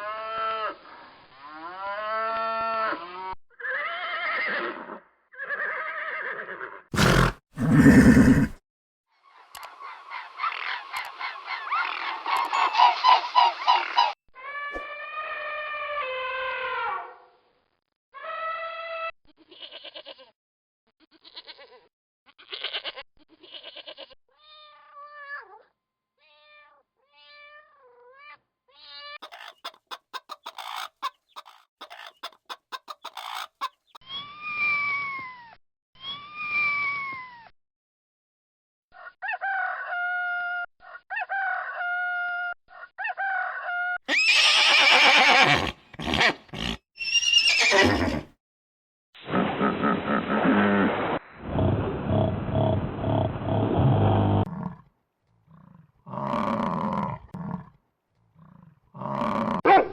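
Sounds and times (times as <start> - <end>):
roosters crowing: 7.0 - 8.6, 43.1 - 48.3
ostrich clicking and clucking: 29.2 - 33.8.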